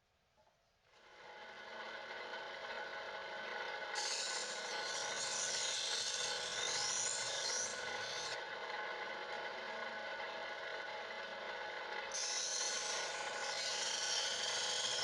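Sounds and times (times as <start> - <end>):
angle grinder motor running: 3.9 - 8.5, 12.1 - 15.0
grinding disc hissing on steel: 4.0 - 8.4, 12.1 - 15.0.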